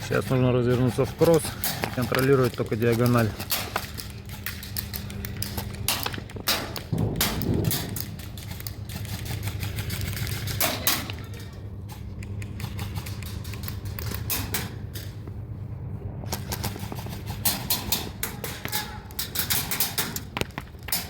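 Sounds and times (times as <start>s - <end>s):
low hum: 0.0s - 21.0s
airsoft guns firing: 5.8s - 11.1s.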